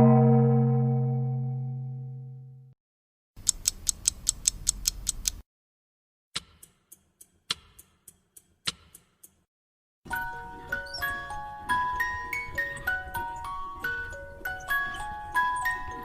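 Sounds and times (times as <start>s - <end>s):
ringing bell-like tone: 0.0s - 2.5s
mechanical clicking: 3.4s - 5.4s.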